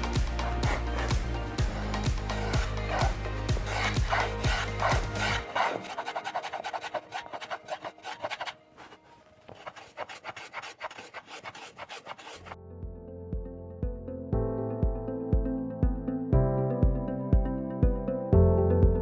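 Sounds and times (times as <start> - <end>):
background music: 0.0 - 11.4, 12.2 - 19.0
hand tool rasping wood: 1.8 - 12.6.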